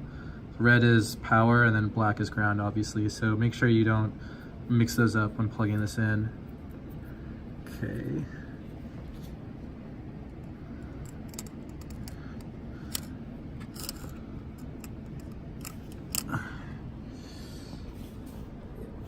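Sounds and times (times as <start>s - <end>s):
low hum: 0.0s - 19.0s
plastic connector clicks and scrapes: 10.4s - 16.3s.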